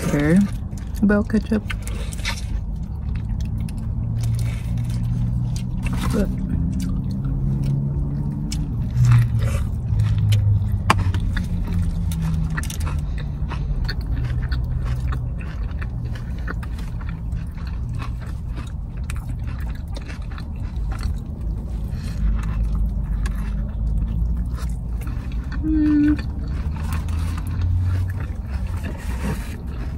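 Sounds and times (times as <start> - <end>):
chewing and biting food: 0.0 - 29.9
low steady rumble: 0.0 - 29.9.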